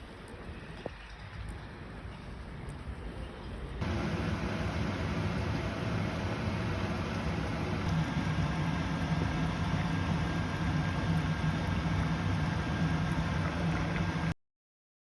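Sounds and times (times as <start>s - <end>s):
vehicle engine rumble: 3.7s - 14.4s.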